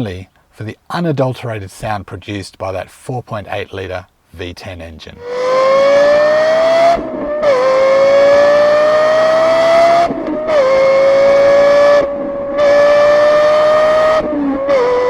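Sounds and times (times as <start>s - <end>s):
car engine revving high: 5.2s - 15.0s.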